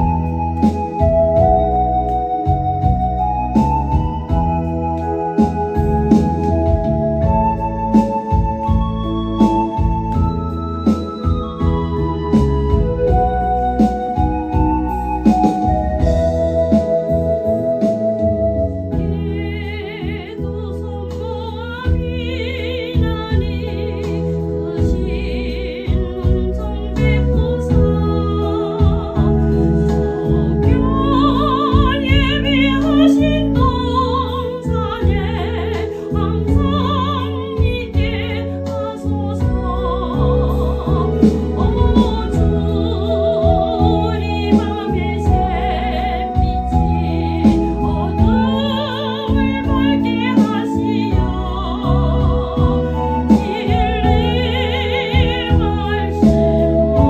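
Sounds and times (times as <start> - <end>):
instrumental accompaniment with bass: 0.0 - 57.0
woman singing operatically: 19.0 - 57.0.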